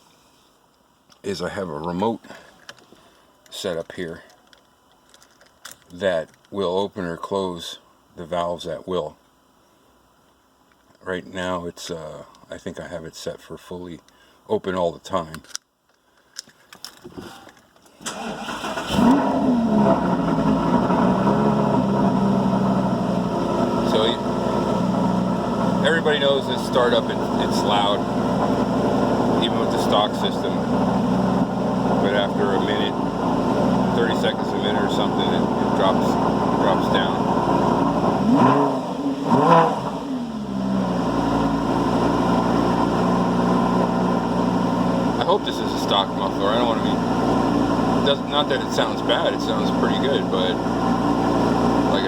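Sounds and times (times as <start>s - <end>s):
car engine starting and idling: 17.9s - 52.0s.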